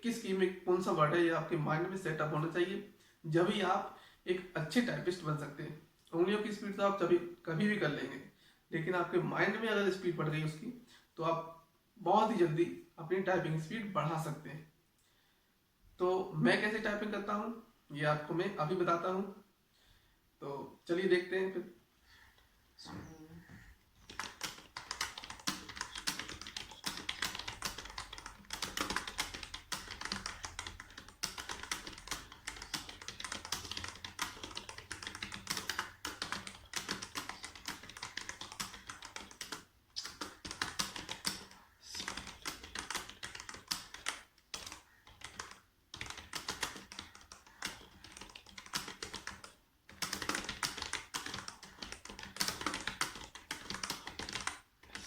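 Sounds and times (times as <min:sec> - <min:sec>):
fast typing on keyboard: 0:24.0 - 0:55.0.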